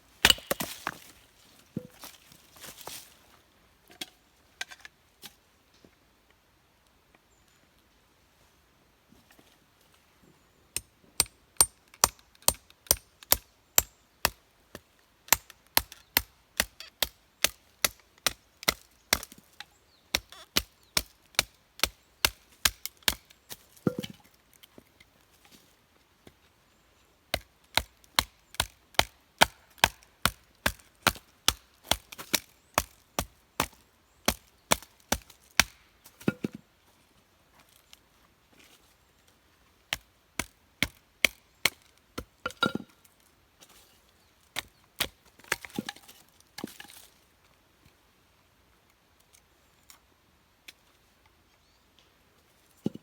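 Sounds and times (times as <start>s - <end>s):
axe chopping firewood: 0.2s - 1.1s, 11.2s - 19.4s, 20.1s - 24.2s, 27.3s - 36.6s, 39.9s - 42.9s, 44.6s - 46.9s.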